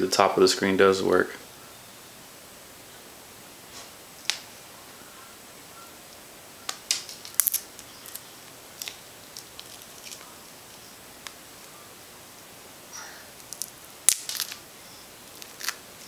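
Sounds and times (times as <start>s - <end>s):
glass crackling and snapping: 6.7s - 11.4s, 13.4s - 14.6s, 15.3s - 15.8s.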